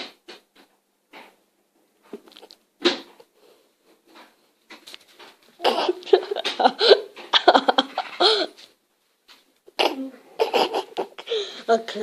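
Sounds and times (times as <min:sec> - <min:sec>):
woman laughing: 0:05.6 - 0:08.6, 0:10.4 - 0:11.3.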